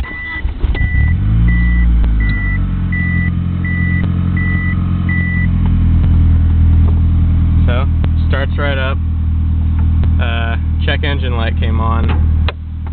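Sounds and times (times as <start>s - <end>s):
car warning chime beeping: 0.0s - 5.6s
car engine starting and idling: 0.0s - 12.9s.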